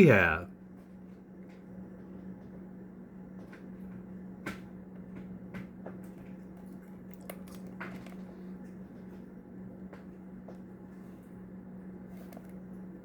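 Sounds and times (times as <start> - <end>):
steady low hum: 0.0 - 0.5.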